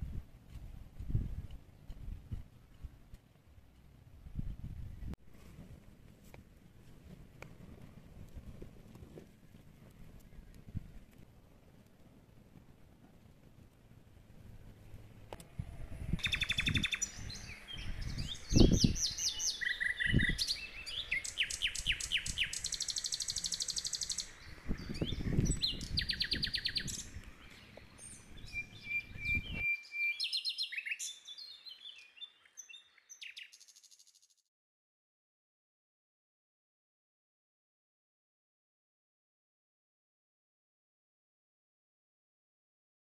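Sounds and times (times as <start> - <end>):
songbirds chirping in trills: 16.1 - 34.2.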